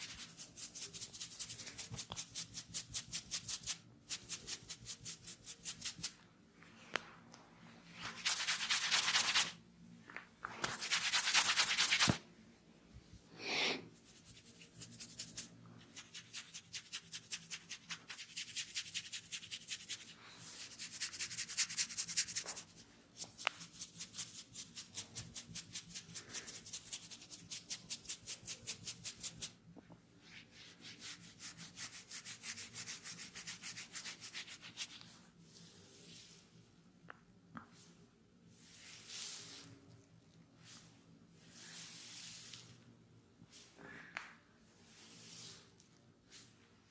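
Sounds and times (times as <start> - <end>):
hands rubbing through hair: 7.9 - 9.6, 10.4 - 12.2, 13.4 - 24.5, 30.2 - 36.4, 38.6 - 39.8, 40.6 - 42.8.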